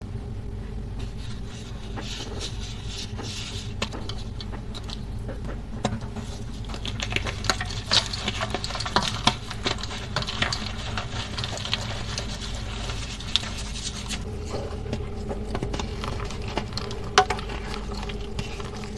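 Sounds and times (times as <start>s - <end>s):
low hum: 0.0s - 18.9s
chalk crunching and crumbling: 0.9s - 18.9s.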